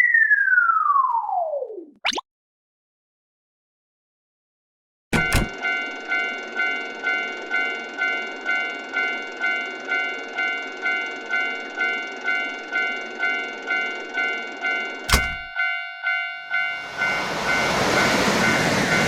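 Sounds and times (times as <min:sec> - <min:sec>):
railway crossing bell ringing: 0:05.2 - 0:19.0.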